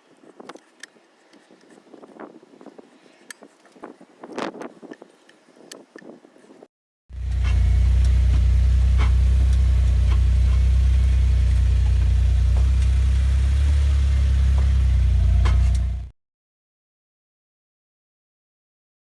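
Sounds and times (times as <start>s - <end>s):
car engine rumbling: 7.1s - 16.1s.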